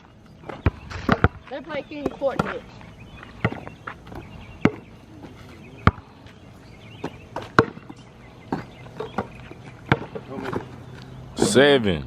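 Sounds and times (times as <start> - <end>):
basketball bouncing: 0.0 - 4.9, 5.8 - 6.1, 7.0 - 10.7.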